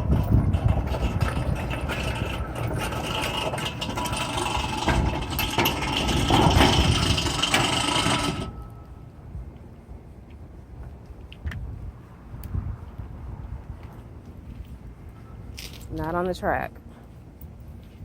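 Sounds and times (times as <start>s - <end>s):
gate opener motor: 0.0s - 8.8s
gate scraping across concrete: 0.0s - 8.9s.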